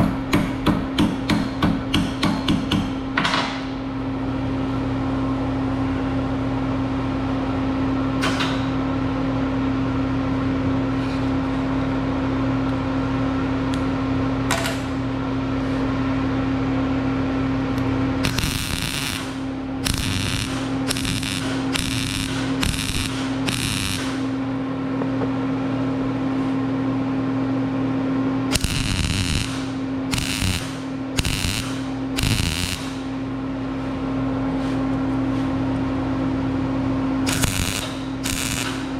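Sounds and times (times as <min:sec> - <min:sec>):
welding machine humming: 0:17.7 - 0:24.7, 0:28.5 - 0:33.4, 0:37.2 - 0:38.9
crackling weld bursts: 0:18.2 - 0:24.3, 0:28.5 - 0:33.1, 0:37.2 - 0:38.9.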